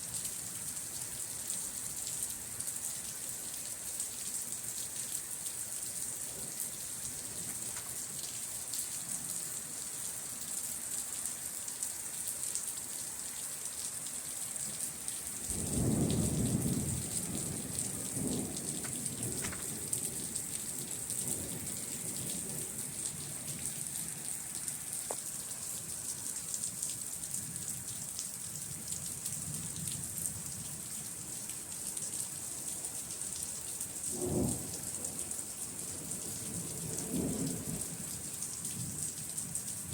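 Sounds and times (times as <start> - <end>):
rain hissing: 12.0 - 28.1
thunder rumbling: 15.5 - 23.8.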